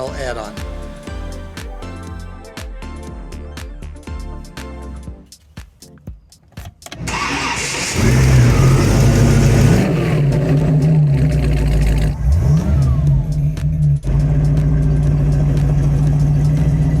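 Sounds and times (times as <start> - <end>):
car engine starting and idling: 6.5 - 17.0
engine throttle revving: 7.0 - 17.0.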